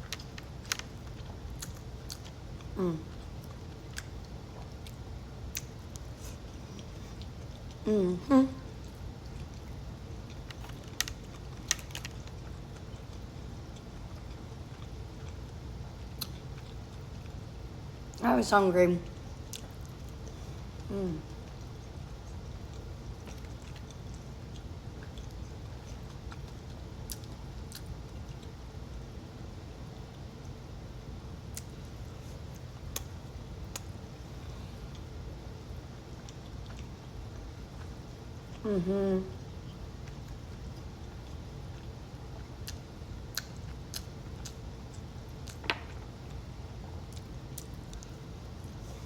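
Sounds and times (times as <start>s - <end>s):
steady low hum: 0.0s - 49.0s
wet chewing sounds: 19.2s - 28.6s, 36.2s - 38.6s, 40.0s - 46.4s.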